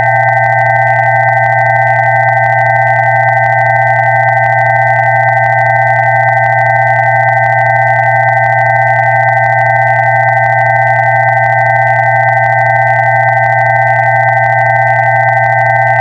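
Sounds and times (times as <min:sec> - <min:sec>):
low electronic hum: 0:00.0 - 0:16.0.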